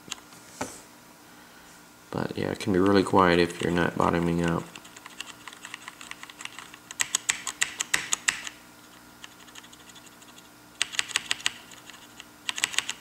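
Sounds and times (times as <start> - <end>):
mechanical keyboard key clacks: 10.8 - 13.0.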